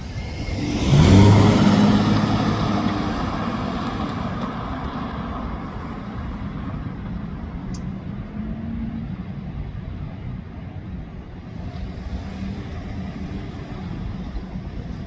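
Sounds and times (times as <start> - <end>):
passing vehicle engine rumble: 0.0 - 15.0
steady low traffic rumble: 0.0 - 15.0
small click: 7.7 - 7.9.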